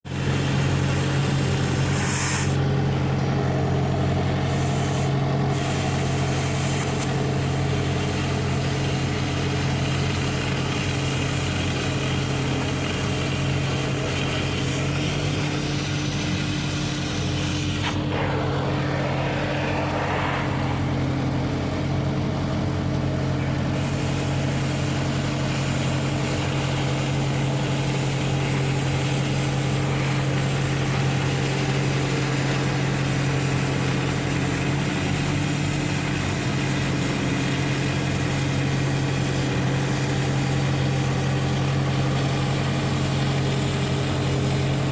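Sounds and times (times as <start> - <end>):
loud hissing noise: 0.1 - 2.6, 13.6 - 40.8
low mechanical hum: 0.1 - 44.9.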